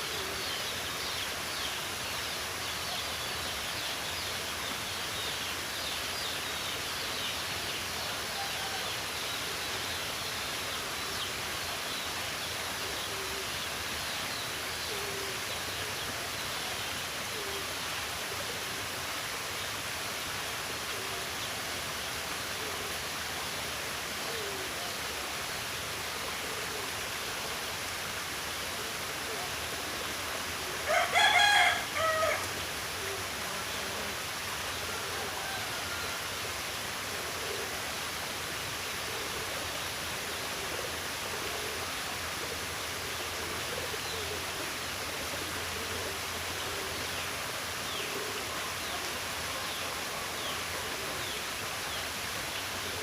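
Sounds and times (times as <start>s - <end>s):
running water rushing: 0.0s - 53.0s
birds calling: 30.8s - 33.2s.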